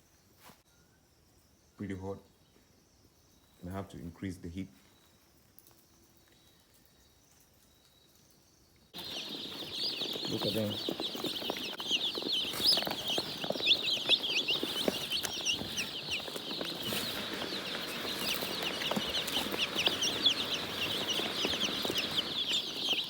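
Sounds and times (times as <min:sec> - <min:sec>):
chicks cheeping: 0:08.9 - 0:23.0.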